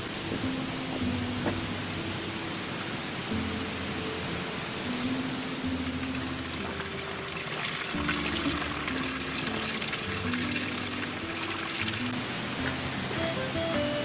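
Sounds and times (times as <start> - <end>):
soft background music: 0.0 - 14.0
water running and splashing: 4.8 - 13.2.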